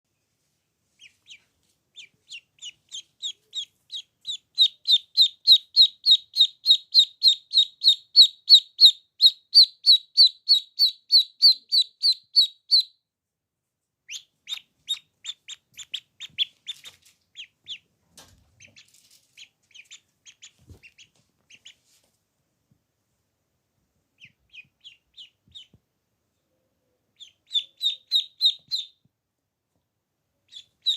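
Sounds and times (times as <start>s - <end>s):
duckling peeping: 1.0s - 13.0s, 14.0s - 17.9s, 18.5s - 21.9s, 24.2s - 25.8s, 27.0s - 29.0s, 30.4s - 30.9s.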